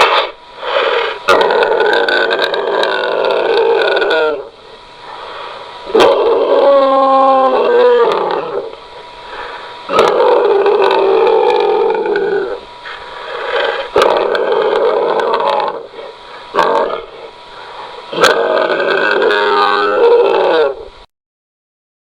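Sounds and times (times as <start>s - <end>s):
person imitating animal growls: 1.2s - 4.5s, 5.9s - 8.8s, 9.9s - 12.6s, 13.3s - 17.3s, 18.1s - 20.9s.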